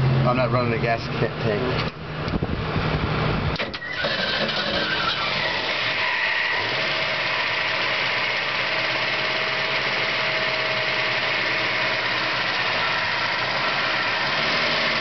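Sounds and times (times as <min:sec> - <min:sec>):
car engine idling: 0:03.1 - 0:15.0.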